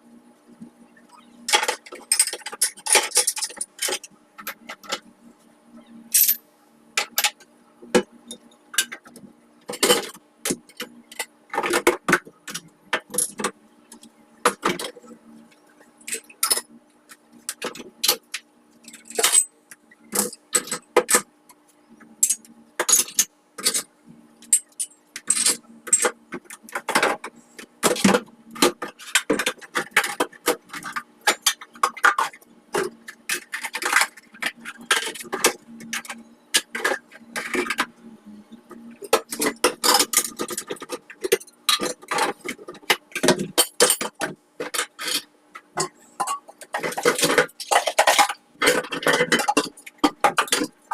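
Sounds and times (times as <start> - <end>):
faint steady hum: 0.0 - 50.9
kitchenware clinking: 45.8 - 50.7.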